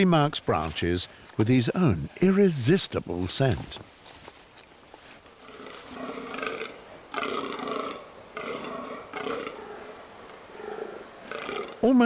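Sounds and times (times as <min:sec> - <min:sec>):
deer groaning: 0:05.3 - 0:12.0.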